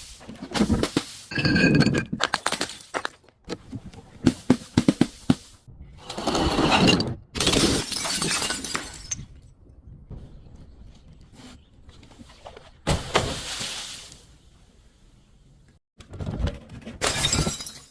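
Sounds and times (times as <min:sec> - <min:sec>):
glass shattering and crunching: 0:07.4 - 0:09.3, 0:17.0 - 0:17.9.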